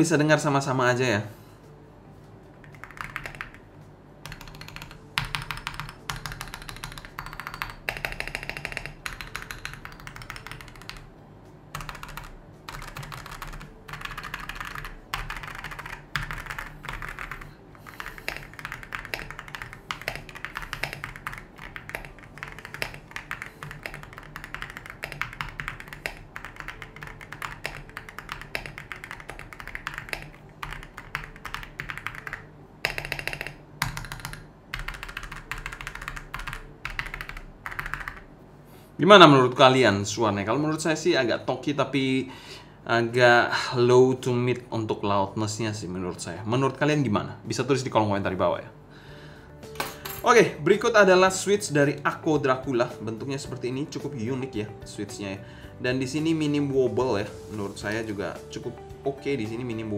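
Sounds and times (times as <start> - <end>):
typing on a mechanical keyboard: 2.6 - 11.1, 11.7 - 38.3.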